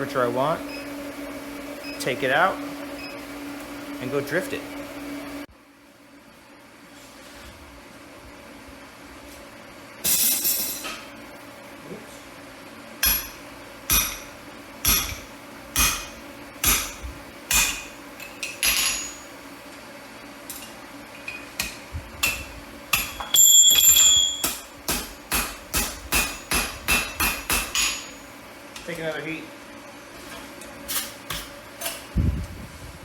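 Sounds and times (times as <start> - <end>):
hammer striking steel on anvil: 13.0 - 17.9, 21.6 - 28.2.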